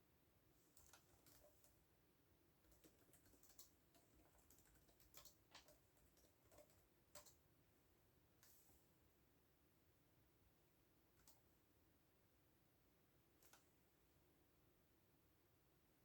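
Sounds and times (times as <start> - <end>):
computer keyboard typing: 0.8 - 1.8, 2.6 - 7.4.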